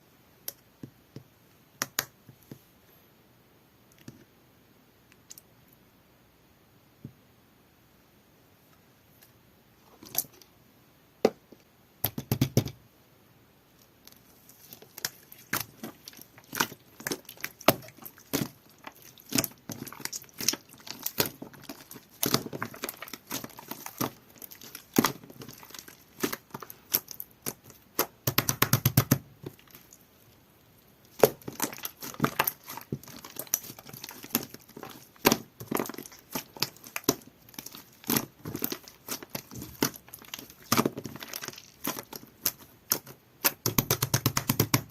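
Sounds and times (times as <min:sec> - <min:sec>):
slime squeezed with sticky pops: 0:14.6 - 0:30.0, 0:31.1 - 0:44.9.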